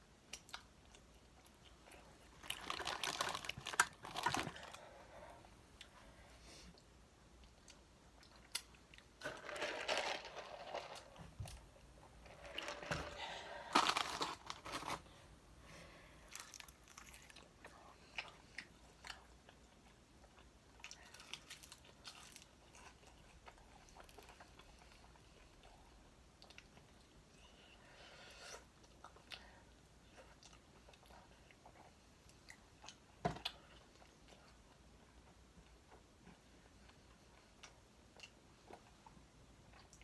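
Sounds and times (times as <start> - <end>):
crunching fried chicken: 16.3 - 17.5
quiet chewing with clicks: 22.6 - 27.6, 28.8 - 40.0.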